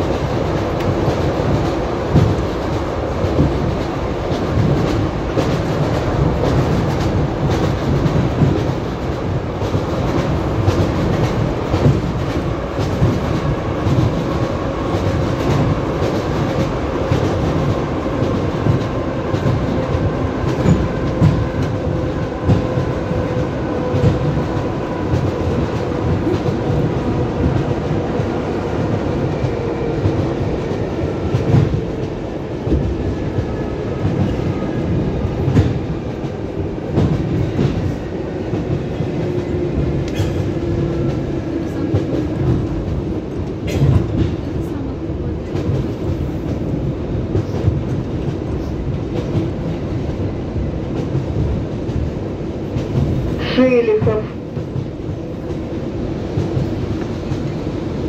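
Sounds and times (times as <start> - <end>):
train wheels clacking over rail joints: 0.0 - 44.7
train low rumble: 0.0 - 58.0.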